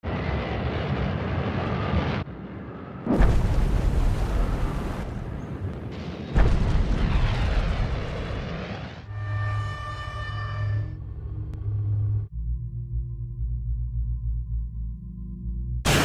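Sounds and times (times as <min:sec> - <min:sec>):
heavy rumbling blast: 0:00.1 - 0:09.1
deep explosion booms: 0:03.1 - 0:05.4, 0:06.0 - 0:08.9.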